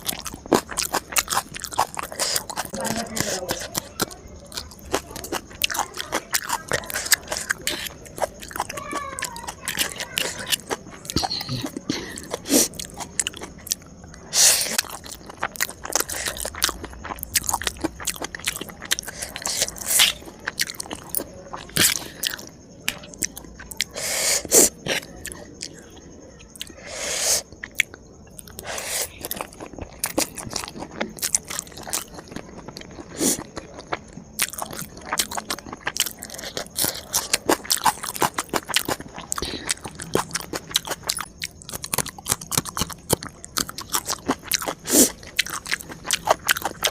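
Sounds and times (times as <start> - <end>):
person chewing crunchy food: 0.0 - 46.9
wet mouth noises: 10.2 - 13.0.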